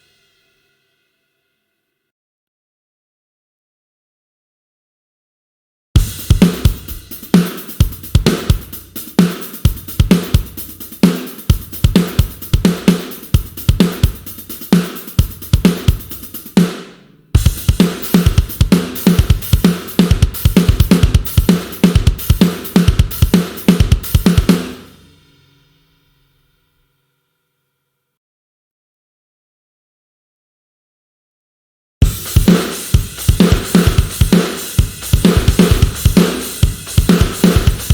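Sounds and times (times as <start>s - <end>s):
rock drum kit groove: 6.0s - 25.2s, 32.0s - 37.9s.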